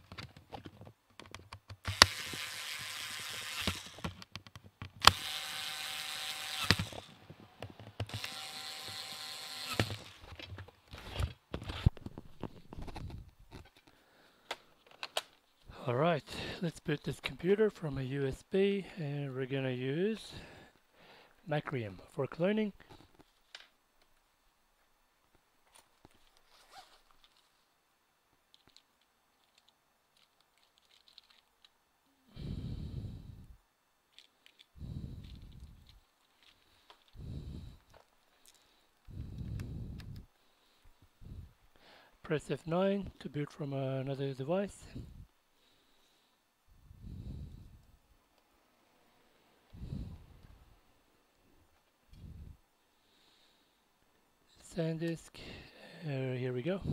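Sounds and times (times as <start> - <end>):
handling clicks and knocks: 0.0 - 2.1, 3.6 - 5.1
small motor whirring: 1.8 - 4.2, 5.0 - 7.2, 8.0 - 10.2.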